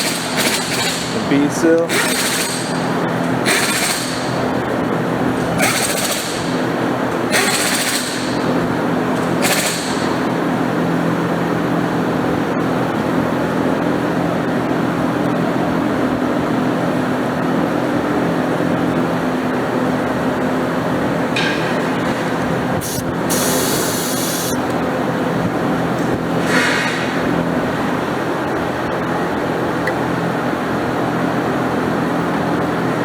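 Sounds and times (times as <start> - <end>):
air compressor motor running: 0.0 - 14.0, 18.9 - 33.0
short air hisses: 22.8 - 24.6.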